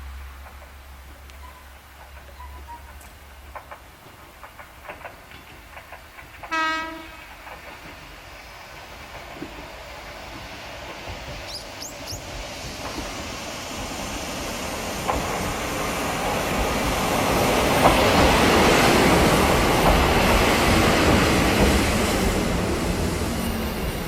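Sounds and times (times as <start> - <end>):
electric train interior running: 0.0 - 24.0.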